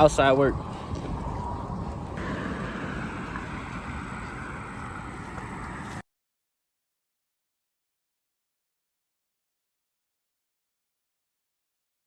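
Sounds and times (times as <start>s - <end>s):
wind buffeting microphone: 0.0s - 6.0s.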